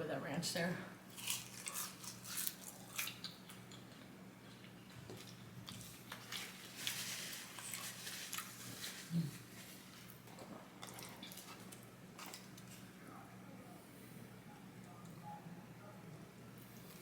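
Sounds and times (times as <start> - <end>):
faint low hum: 0.0 - 17.0
wet chewing and lip smacks: 1.2 - 6.3.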